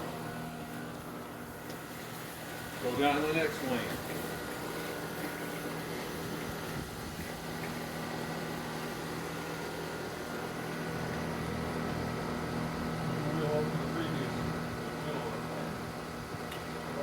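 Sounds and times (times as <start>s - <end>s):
electric lawn mower running: 0.0s - 17.0s.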